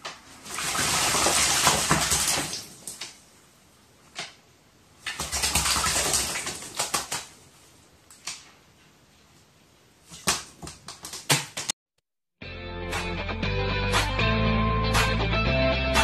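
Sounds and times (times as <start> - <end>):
bird splashing in water: 0.4 - 3.1, 5.0 - 7.4.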